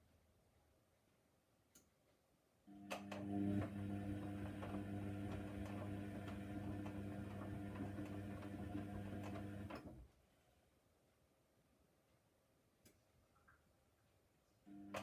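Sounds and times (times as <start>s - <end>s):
washing machine drum motor humming: 2.9s - 10.0s.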